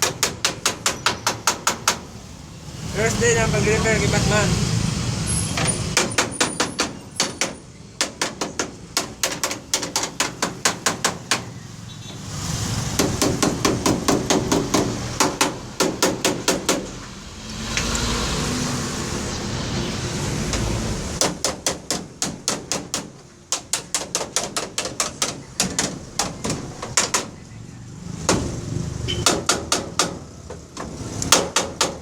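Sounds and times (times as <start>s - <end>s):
hammer striking metal body: 5.8s - 11.5s, 28.2s - 32.0s.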